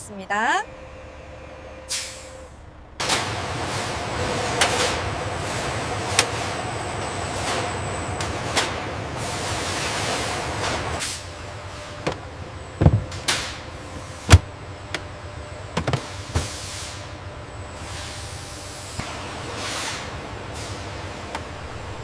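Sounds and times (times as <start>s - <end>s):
sharp clunks and bangs: 12.8s - 13.6s, 14.2s - 15.0s, 15.7s - 16.5s.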